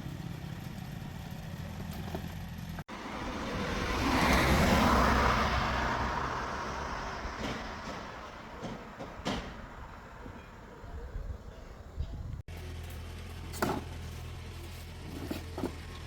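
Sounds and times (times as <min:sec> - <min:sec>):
motor vehicle passing by: 0:00.0 - 0:08.6.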